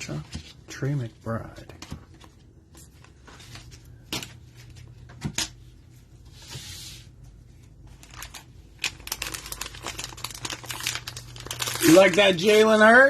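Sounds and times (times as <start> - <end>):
wrapper sliding rustle: 8.0 - 12.9.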